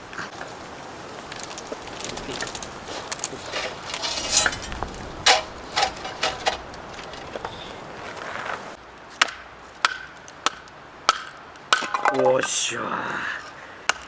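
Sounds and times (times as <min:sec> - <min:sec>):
clinks and knocks of cookware: 0:03.2 - 0:07.6, 0:11.8 - 0:12.6.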